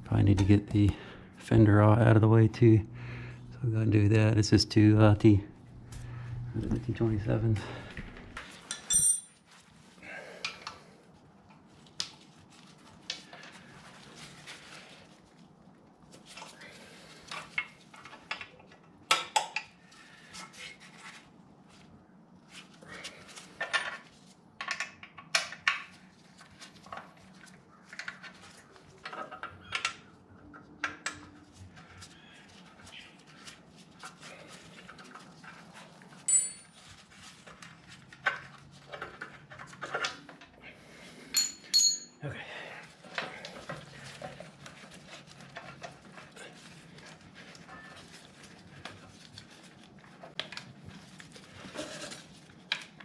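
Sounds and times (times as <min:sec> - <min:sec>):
faint steady hum: 0:00.0 - 0:09.3
metal parts clinking: 0:08.7 - 0:09.4, 0:36.3 - 0:36.8, 0:41.3 - 0:42.2.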